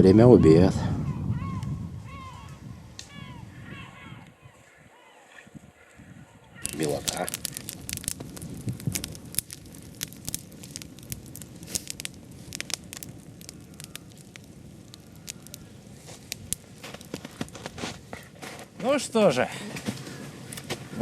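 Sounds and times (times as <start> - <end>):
campfire crackling and popping: 5.8 - 21.0.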